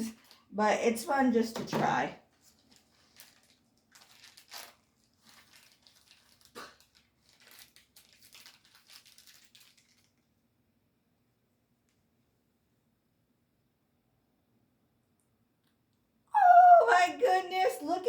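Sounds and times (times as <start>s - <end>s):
packaging crinkling and tearing: 0.1s - 0.5s, 2.3s - 10.3s.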